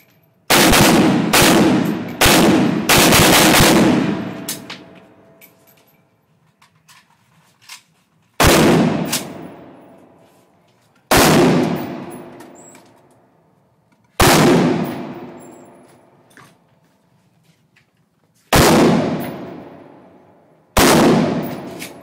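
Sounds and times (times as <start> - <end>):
gunshots with echo: 0.5 - 4.7, 8.4 - 9.8, 11.1 - 12.4, 14.2 - 15.4, 18.5 - 20.1, 20.8 - 22.0.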